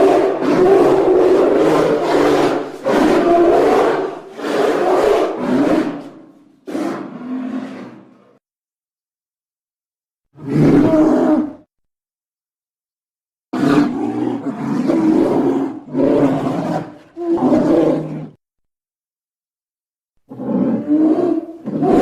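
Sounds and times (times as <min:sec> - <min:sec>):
large animal roaring calls: 0:10.4 - 0:11.6, 0:13.6 - 0:18.4.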